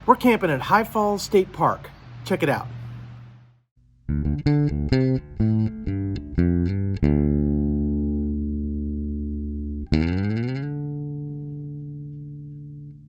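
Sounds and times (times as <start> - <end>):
guitar intro music: 3.8 - 13.0.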